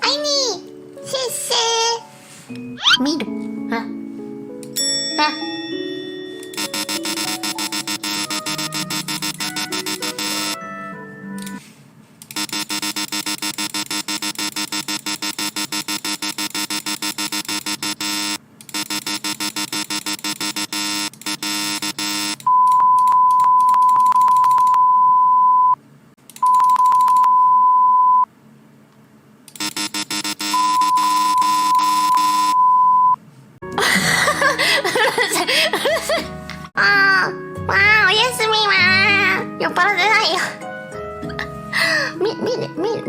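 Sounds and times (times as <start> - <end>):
buzzer chime sound effect: 6.3 - 11.6, 12.4 - 22.9, 29.6 - 33.0
high single-tone bleeps: 6.5 - 10.6, 22.5 - 25.8, 26.4 - 28.3, 30.4 - 33.2.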